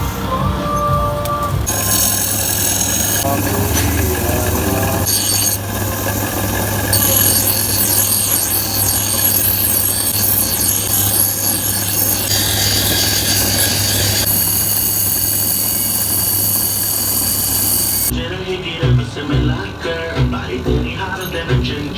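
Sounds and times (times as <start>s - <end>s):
power tool whining: 0.7s - 18.1s.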